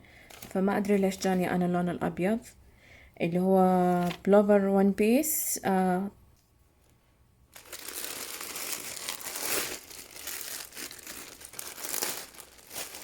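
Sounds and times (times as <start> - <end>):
crinkly packaging rustling: 0.2 - 1.6, 3.8 - 4.3, 7.5 - 13.0.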